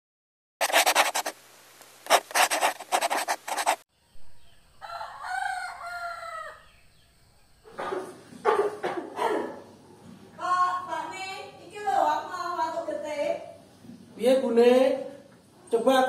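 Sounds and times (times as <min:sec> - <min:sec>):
harsh rasping bursts: 0:00.6 - 0:01.4, 0:02.1 - 0:03.8
rooster crowing: 0:04.2 - 0:06.8.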